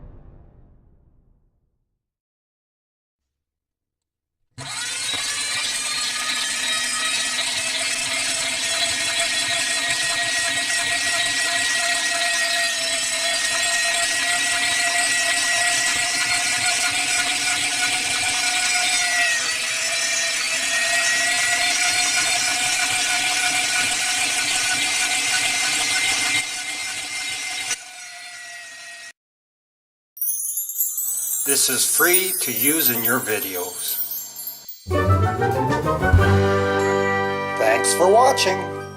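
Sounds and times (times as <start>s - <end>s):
power saw whining: 4.6s - 29.2s.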